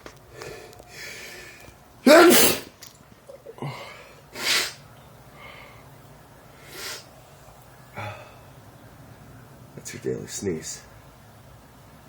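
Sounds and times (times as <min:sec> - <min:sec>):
man sneezing: 0:02.1 - 0:02.7.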